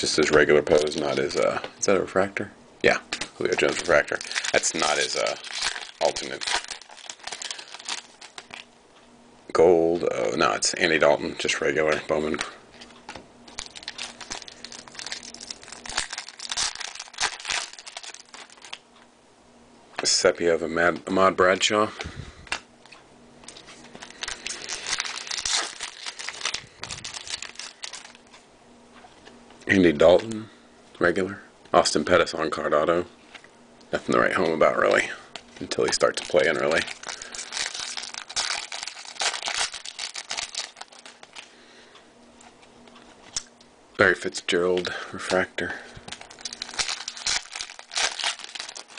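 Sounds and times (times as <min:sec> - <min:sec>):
foil wrapper crinkling and tearing: 0:03.4 - 0:08.7, 0:13.5 - 0:18.8, 0:23.5 - 0:28.3, 0:35.6 - 0:41.5, 0:46.1 - 0:48.9.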